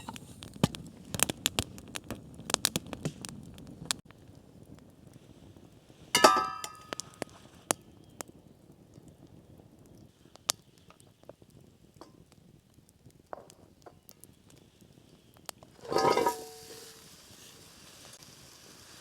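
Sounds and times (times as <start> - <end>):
campfire clicks and crackles: 0.0 - 19.0
metal cookware clink: 6.2 - 7.0, 15.8 - 17.0.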